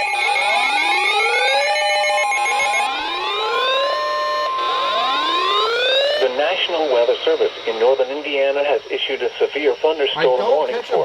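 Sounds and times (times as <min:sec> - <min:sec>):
rising whooping alert tones: 0:00.0 - 0:08.2
steady and beeping alert tones: 0:00.0 - 0:09.3.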